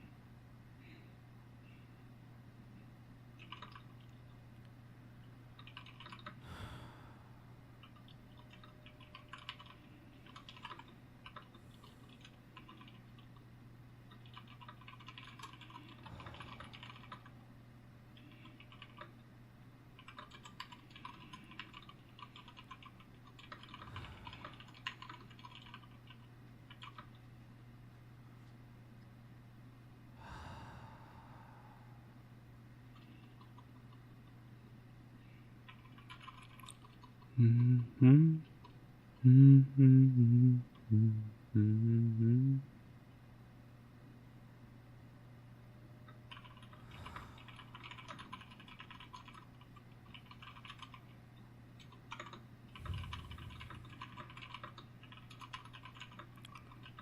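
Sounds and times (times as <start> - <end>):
steady low hum: 0.0 - 57.0
soft breath: 0.7 - 2.1, 6.4 - 7.6, 15.7 - 17.1, 23.8 - 24.8, 30.1 - 32.3, 46.6 - 48.2
computer keyboard typing: 3.4 - 4.2, 5.6 - 6.4, 7.8 - 13.4, 14.1 - 17.3, 18.2 - 19.2, 20.0 - 27.2, 35.7 - 37.3, 46.3 - 51.2, 51.8 - 57.0.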